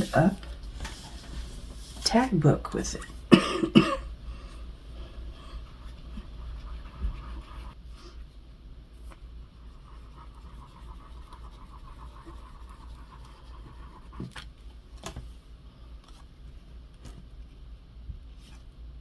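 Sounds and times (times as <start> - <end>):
scratchy rubbing on paper: 5.0 - 8.2, 9.1 - 14.5.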